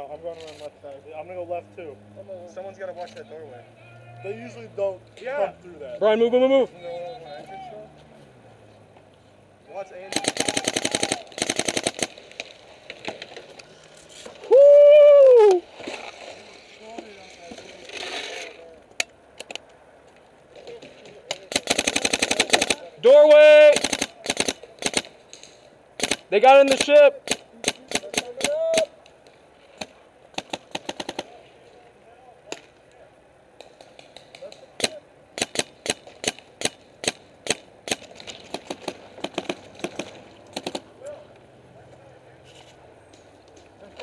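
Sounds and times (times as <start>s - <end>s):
paintball markers firing: 10.1s - 12.3s, 21.3s - 22.9s, 26.0s - 28.9s, 29.8s - 31.4s, 33.6s - 40.9s
person shouting: 14.5s - 15.6s.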